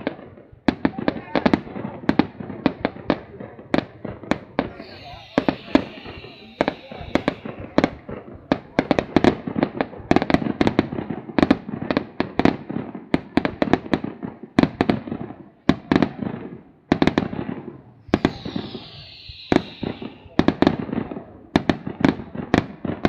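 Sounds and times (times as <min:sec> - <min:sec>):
fireworks bangs with echo: 0:00.1 - 0:23.0
falling firework whistle: 0:04.6 - 0:09.4, 0:18.0 - 0:21.2.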